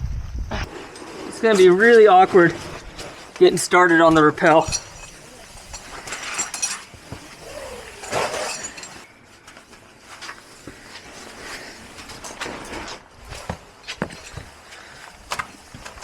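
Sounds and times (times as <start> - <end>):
rope and gear rustling: 0.5 - 16.0
metal climbing hardware clinking: 0.9 - 9.1.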